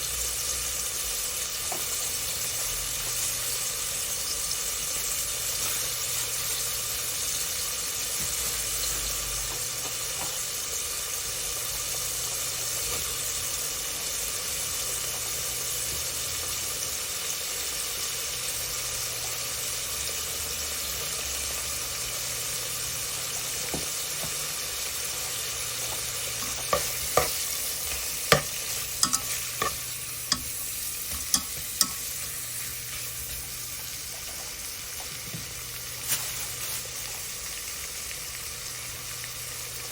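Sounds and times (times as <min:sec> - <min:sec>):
stew sizzling in a pot: 0:00.0 - 0:39.9
utensil clacking against pot: 0:26.4 - 0:27.5, 0:28.3 - 0:32.1.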